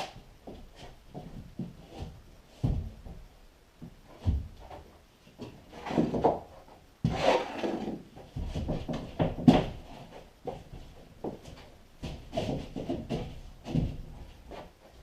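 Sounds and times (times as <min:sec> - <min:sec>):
drywall sheet scraping: 0:07.0 - 0:08.1.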